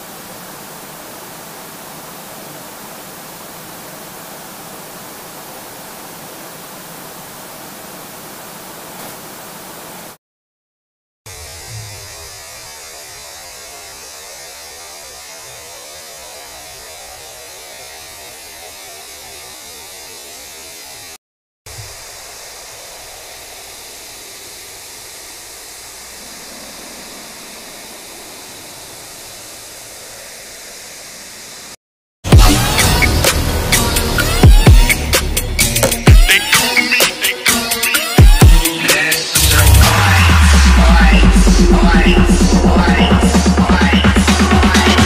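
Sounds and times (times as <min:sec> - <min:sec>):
static hiss with low hum: 0:00.0 - 0:10.2, 0:11.3 - 0:31.8
loud electronic music: 0:32.3 - 0:45.0.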